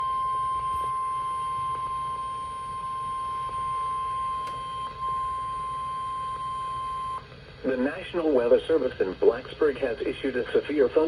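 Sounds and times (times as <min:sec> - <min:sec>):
steady warning alarm tone: 0:00.0 - 0:07.2
faint radio hiss: 0:07.2 - 0:11.0.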